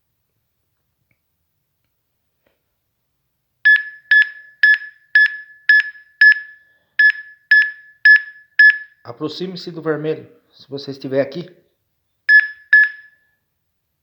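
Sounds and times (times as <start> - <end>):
short high electronic beeps: 3.7 - 9.0, 12.3 - 13.2.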